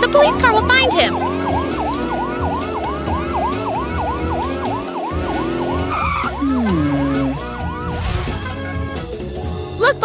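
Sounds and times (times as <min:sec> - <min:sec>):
cartoon police siren yelping: 0:00.0 - 0:08.0
backing music track: 0:00.0 - 0:10.0.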